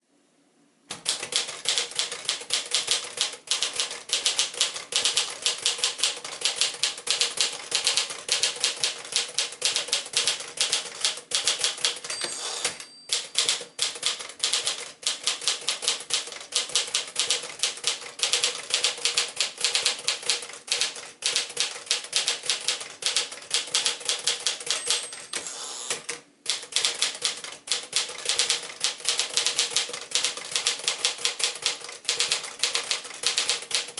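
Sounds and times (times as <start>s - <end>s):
typewriter keys striking: 0.9s - 25.4s, 26.5s - 33.9s
typewriter margin bell ringing: 11.9s - 14.3s, 24.6s - 25.6s.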